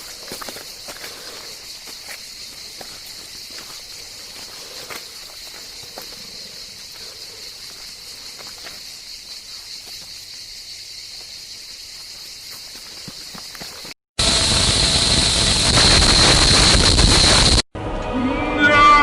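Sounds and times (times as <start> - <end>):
crickets chirring: 0.0 - 14.6
soft footsteps: 12.0 - 14.0.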